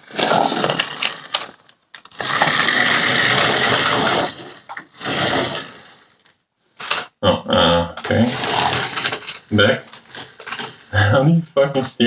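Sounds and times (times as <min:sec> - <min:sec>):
toy truck electric motor whirring: 0:00.0 - 0:06.4, 0:08.0 - 0:11.1.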